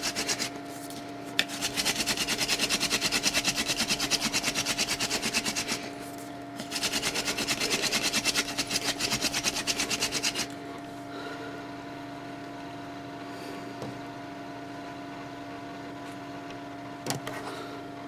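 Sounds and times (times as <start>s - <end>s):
wooden spindle grinding in notch: 1.5s - 5.9s, 6.6s - 10.5s.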